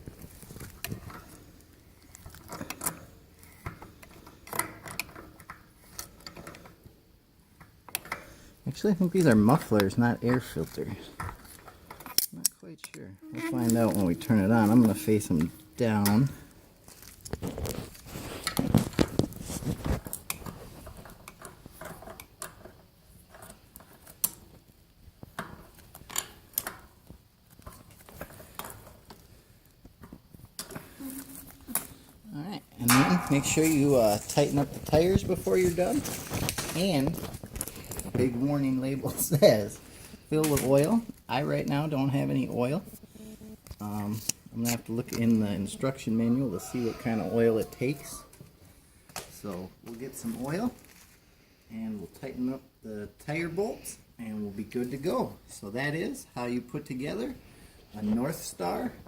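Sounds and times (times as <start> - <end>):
light metal clinks and scrapes: 32.8 - 36.9.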